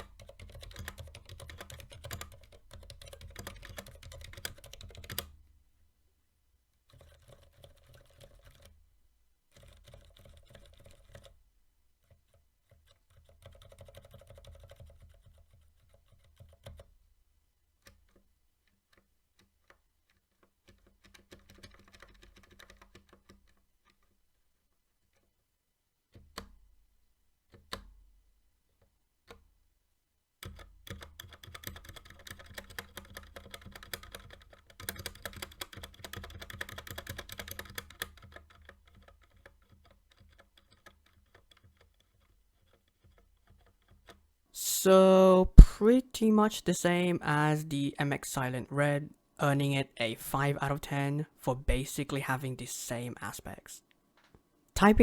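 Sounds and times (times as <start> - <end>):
quiet keyboard keystrokes: 0.0 - 5.4, 6.9 - 8.8, 9.5 - 11.4, 12.0 - 16.9, 17.8 - 24.1, 30.4 - 44.2.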